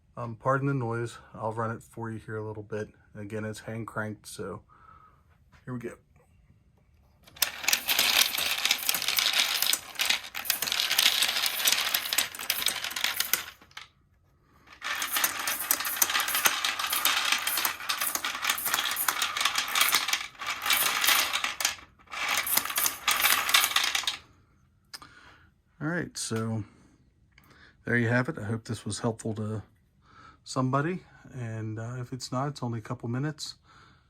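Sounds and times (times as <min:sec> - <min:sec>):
bullets clattering in hopper: 0:07.3 - 0:13.9, 0:14.7 - 0:24.2.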